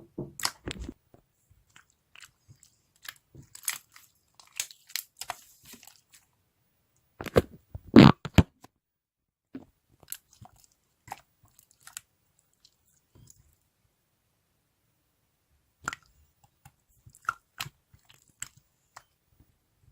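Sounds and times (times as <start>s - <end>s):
hands squishing slime: 1.6s - 6.3s, 10.0s - 13.6s, 15.8s - 19.2s.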